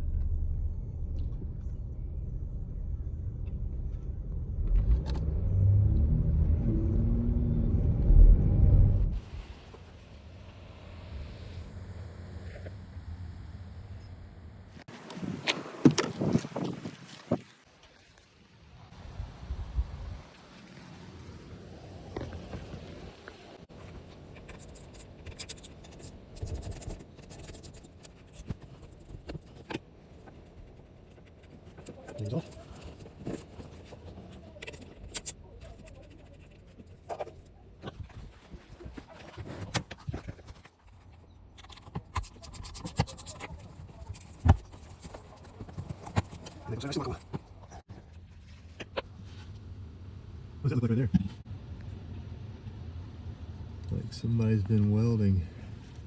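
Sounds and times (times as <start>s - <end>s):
low background rumble: 0.0s - 14.9s.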